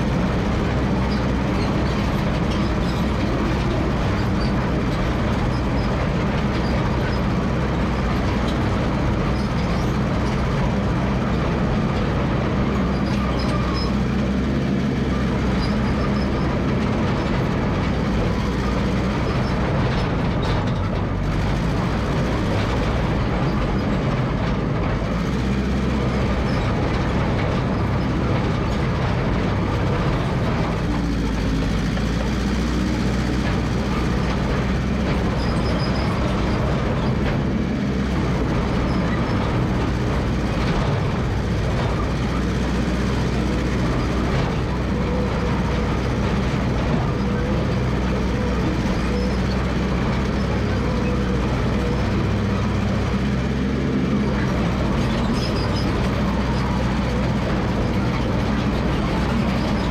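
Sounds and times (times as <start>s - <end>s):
dozer engine running steadily: 0.0s - 59.9s.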